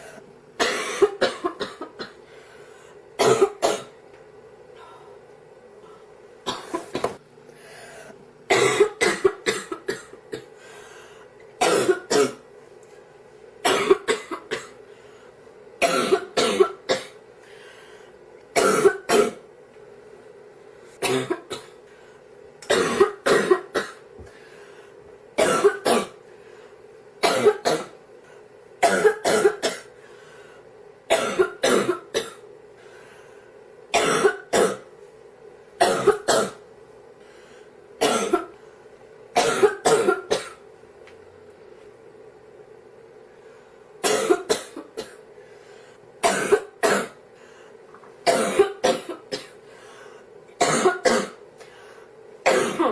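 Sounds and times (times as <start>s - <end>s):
girl coughing: 0.6s - 2.2s, 3.2s - 3.9s, 6.5s - 7.2s, 8.5s - 10.5s, 11.6s - 12.4s, 13.6s - 14.8s, 15.8s - 17.2s, 18.6s - 19.4s, 21.0s - 21.7s, 22.7s - 24.0s, 25.4s - 26.2s, 27.2s - 28.0s, 28.8s - 29.9s, 31.1s - 32.4s, 34.0s - 34.9s, 35.8s - 36.6s, 38.0s - 38.5s, 39.4s - 40.6s, 44.0s - 45.2s, 46.2s - 47.2s, 48.3s - 49.6s, 50.6s - 51.4s, 52.4s - 52.9s.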